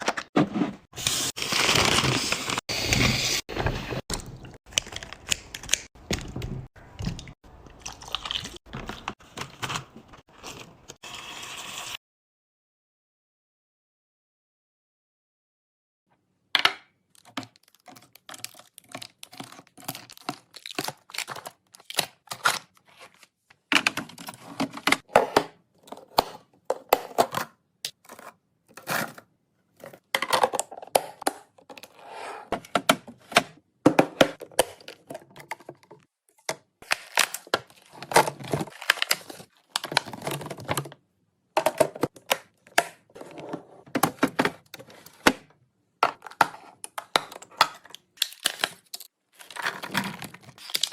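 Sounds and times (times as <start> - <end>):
plastic containers clacking: 32.6 - 41.0, 41.6 - 45.4
packaging tearing: 48.2 - 50.9.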